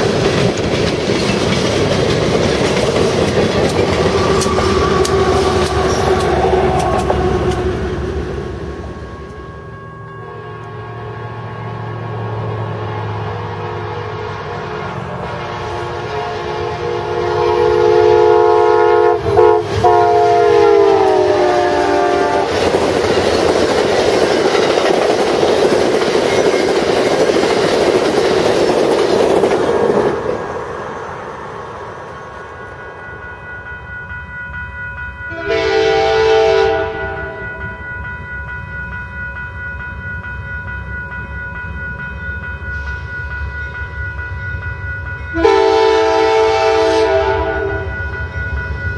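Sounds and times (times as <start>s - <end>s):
train rushing past: 0.0s - 34.1s, 35.2s - 48.9s
train air horn: 4.0s - 8.0s, 10.2s - 22.6s, 35.3s - 37.6s, 45.3s - 48.0s.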